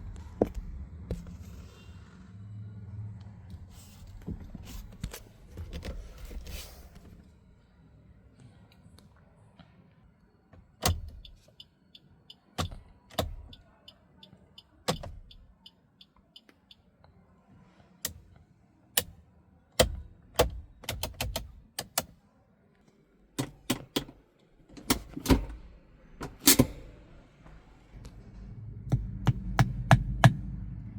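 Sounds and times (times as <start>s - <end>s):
car fittings clicking: 14.9s - 15.4s, 26.2s - 26.8s.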